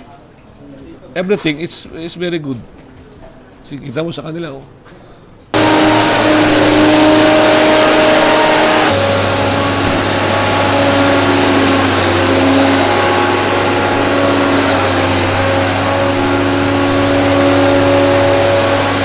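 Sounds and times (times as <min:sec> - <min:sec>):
loud engine running: 0:05.6 - 0:19.0
low hum: 0:05.6 - 0:19.0.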